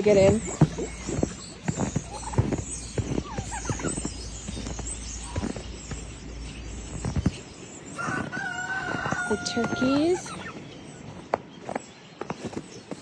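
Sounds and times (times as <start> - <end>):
poultry calling: 0.0 - 11.2.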